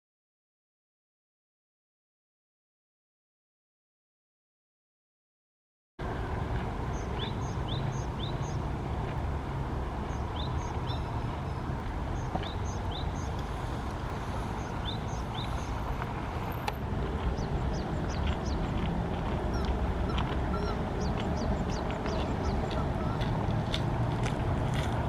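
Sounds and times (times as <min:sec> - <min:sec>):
steady low rumble: 0:06.0 - 0:25.0.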